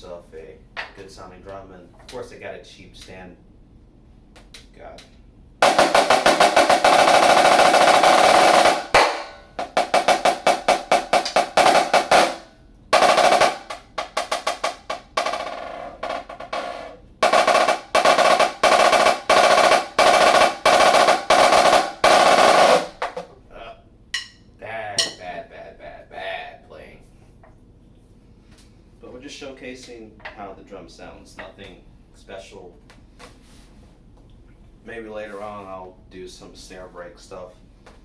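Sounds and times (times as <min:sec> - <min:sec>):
snare drum played with sticks: 0:05.6 - 0:23.3.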